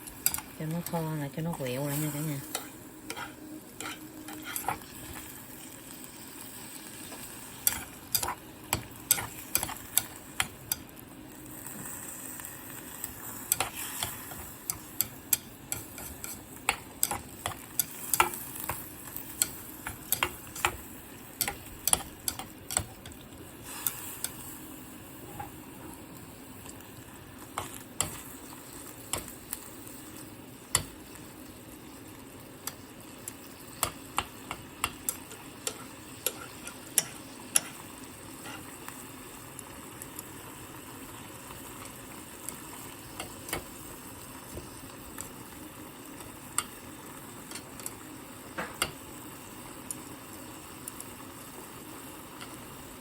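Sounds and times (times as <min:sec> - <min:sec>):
sauce sizzling and bubbling in pot: 0:00.0 - 0:53.0
spoon clicking against pot: 0:19.4 - 0:20.8, 0:21.4 - 0:23.2.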